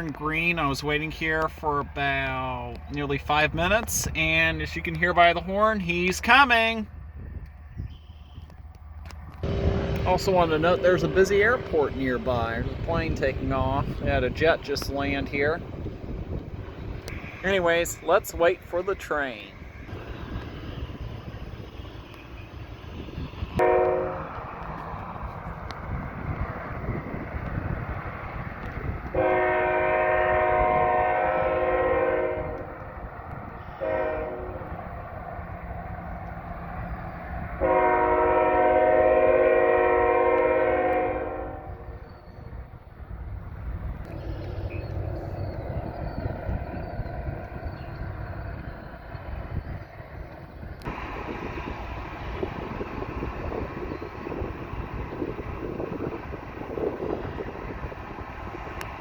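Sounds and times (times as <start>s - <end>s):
wind noise: 6.2s - 37.7s, 41.6s - 59.0s
low rumble: 6.8s - 29.1s
locomotive air horn blasts: 9.4s - 13.2s, 23.6s - 24.4s, 29.1s - 32.8s, 33.6s - 34.7s, 37.6s - 41.9s.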